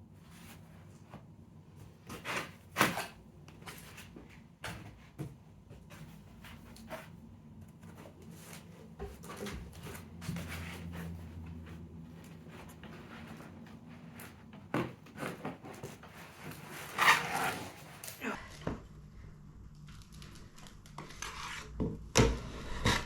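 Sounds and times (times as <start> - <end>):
low hum: 18.4 - 23.0.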